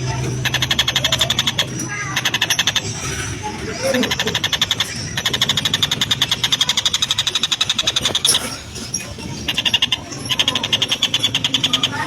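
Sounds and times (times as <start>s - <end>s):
bird harsh chattering call: 3.9s - 12.0s.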